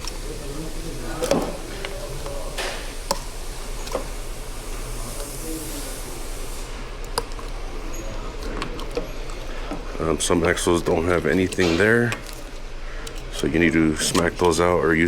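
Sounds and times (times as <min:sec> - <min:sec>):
steady low hum: 0:00.0 - 0:15.0
hiss: 0:00.1 - 0:06.8.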